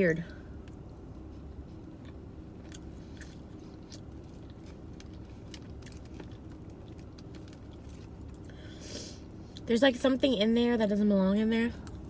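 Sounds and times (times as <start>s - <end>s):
low steady hum: 0.0s - 12.0s
person chewing food: 0.7s - 8.5s.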